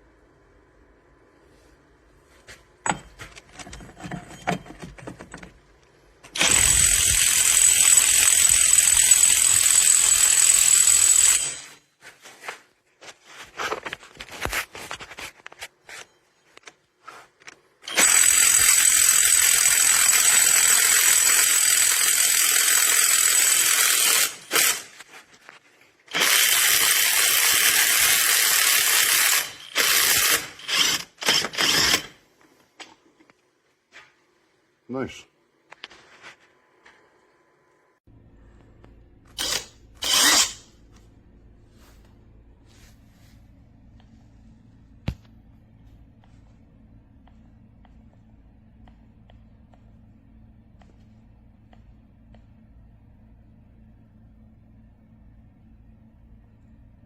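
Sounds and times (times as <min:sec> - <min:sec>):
impact wrench whining: 0:06.2 - 0:11.8, 0:17.8 - 0:25.1, 0:26.1 - 0:32.2, 0:39.3 - 0:40.8.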